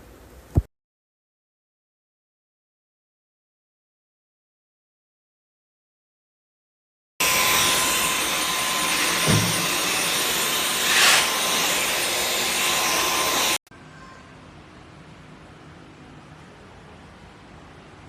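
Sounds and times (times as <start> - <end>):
stick vacuum whining: 7.2 - 13.6.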